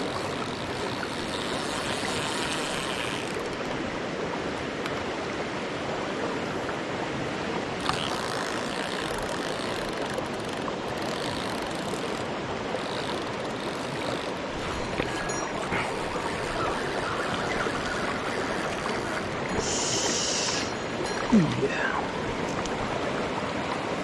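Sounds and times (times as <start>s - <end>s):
stream rushing over rocks: 14.3s - 24.0s.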